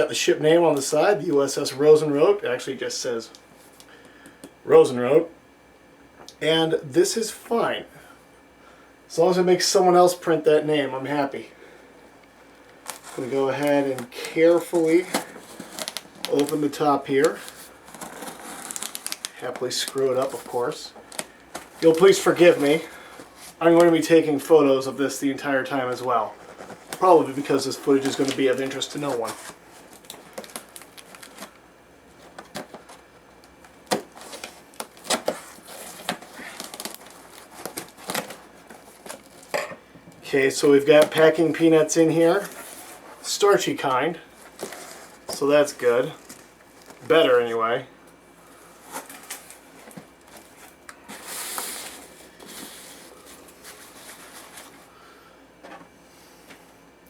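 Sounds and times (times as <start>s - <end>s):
packing tape rustling: 12.6s - 24.5s, 25.7s - 39.6s, 44.3s - 47.6s, 48.5s - 54.9s
cardboard box being opened: 17.9s - 19.2s.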